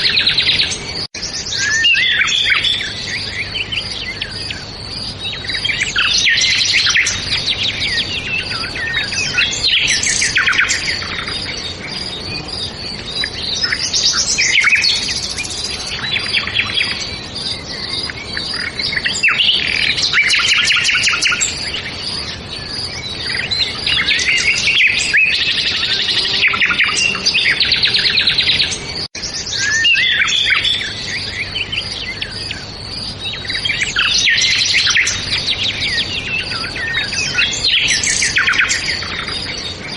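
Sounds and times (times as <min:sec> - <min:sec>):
songbirds singing and chirping: 0:00.0 - 0:39.9.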